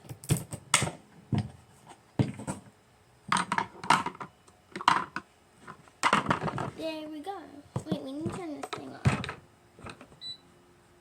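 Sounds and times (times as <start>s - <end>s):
plastic toys knocking and rattling: 3.3s - 6.8s, 7.7s - 10.1s.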